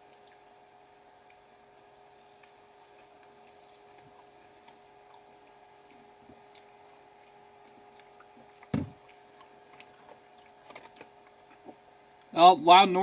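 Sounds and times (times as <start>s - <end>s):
air conditioner hum: 0.0s - 13.0s
person chewing: 1.2s - 12.3s
low thump: 8.7s - 9.0s.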